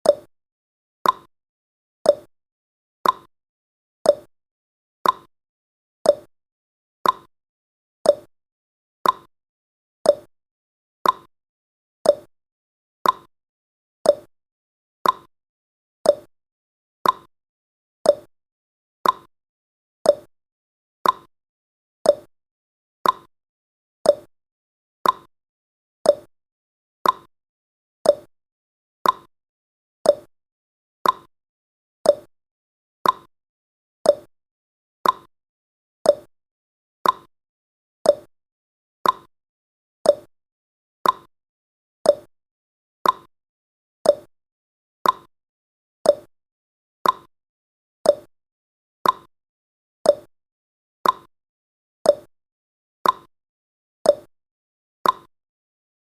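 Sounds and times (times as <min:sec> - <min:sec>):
clock ticking: 0:15.0 - 0:15.3, 0:31.0 - 0:31.3, 0:35.0 - 0:35.3, 0:39.0 - 0:39.3, 0:45.0 - 0:45.3, 0:47.0 - 0:47.3, 0:49.0 - 0:49.3, 0:55.0 - 0:55.3.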